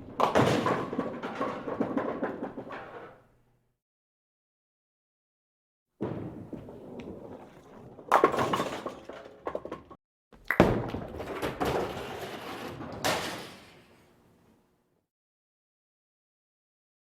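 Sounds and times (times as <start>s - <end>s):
bowling pins crashing: 0.0s - 3.2s, 6.0s - 10.0s, 10.6s - 13.9s.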